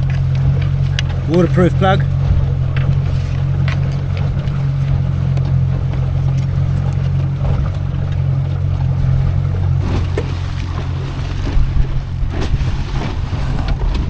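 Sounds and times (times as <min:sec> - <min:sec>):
outboard motor humming: 0:00.0 - 0:14.0.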